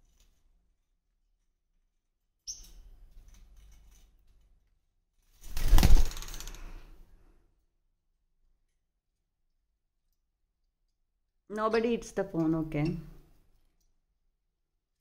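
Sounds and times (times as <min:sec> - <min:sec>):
parrot flapping wings: 0:05.3 - 0:06.9.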